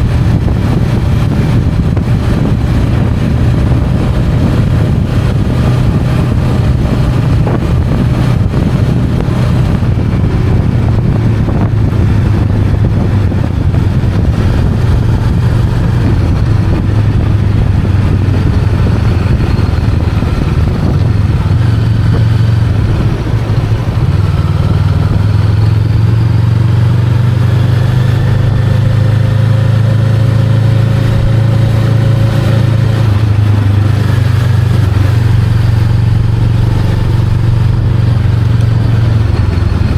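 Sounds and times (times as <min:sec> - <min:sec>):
broad rush of noise: 0:00.0 - 0:19.0, 0:19.8 - 0:27.0
motorcycle engine running: 0:00.0 - 0:39.9.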